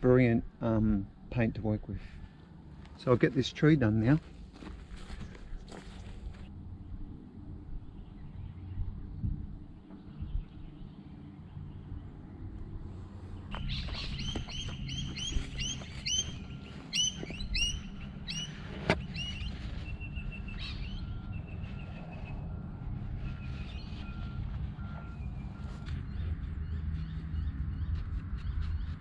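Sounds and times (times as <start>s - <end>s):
low background rumble: 0.0s - 29.0s
wild birds calling: 9.8s - 22.6s.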